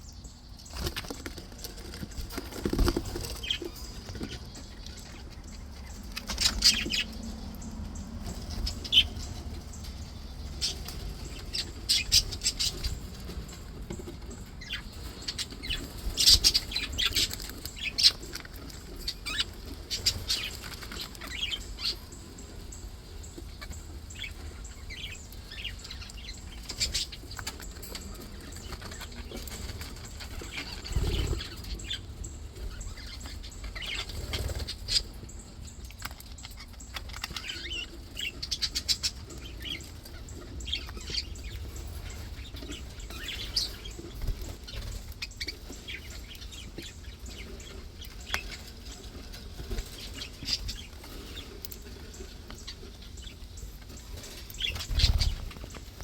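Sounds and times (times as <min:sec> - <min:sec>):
wing flutters: 0:00.7 - 0:04.4, 0:26.6 - 0:32.0, 0:54.1 - 0:56.0
budgerigars chirping: 0:01.9 - 0:56.0.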